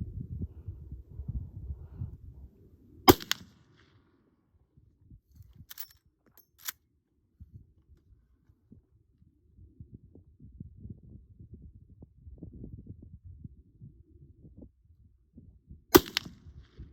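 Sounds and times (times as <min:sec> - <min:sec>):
rifle shot: 0:03.1 - 0:03.6, 0:15.9 - 0:16.4.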